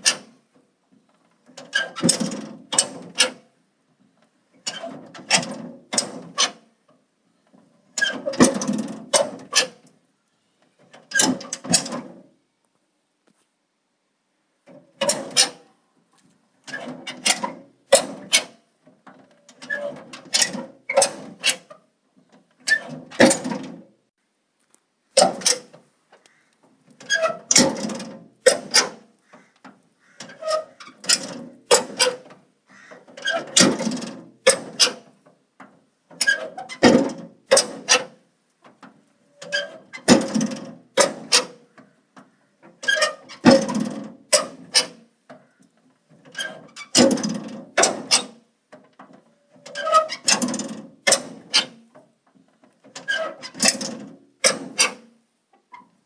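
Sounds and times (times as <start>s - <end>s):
door squeaks: 1.6s - 3.4s, 7.9s - 9.9s, 15.0s - 15.8s, 19.4s - 21.8s, 22.6s - 23.8s, 27.0s - 35.2s, 36.2s - 38.2s, 39.2s - 48.5s, 49.2s - 51.8s, 52.9s - 56.0s.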